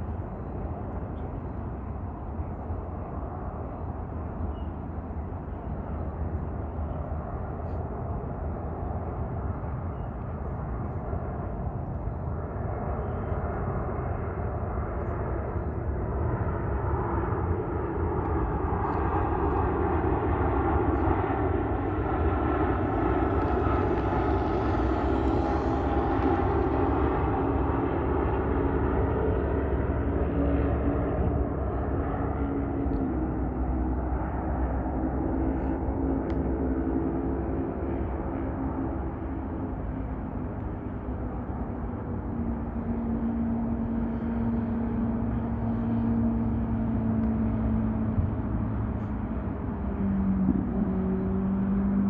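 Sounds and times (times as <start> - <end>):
airplane engine approaching: 0.0 - 52.0.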